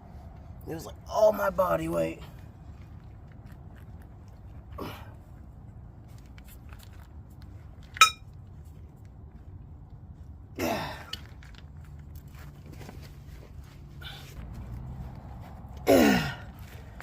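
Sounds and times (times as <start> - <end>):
man groaning: 15.9 - 16.5.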